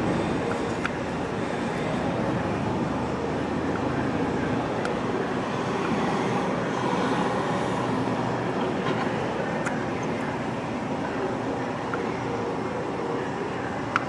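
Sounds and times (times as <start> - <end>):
machinery rumble: 0.0 - 13.5.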